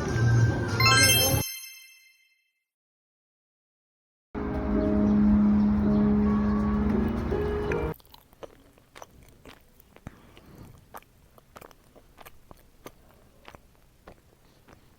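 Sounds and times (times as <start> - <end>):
music: 0.0 - 1.4, 4.4 - 7.9
dog licking and chewing: 7.9 - 14.9.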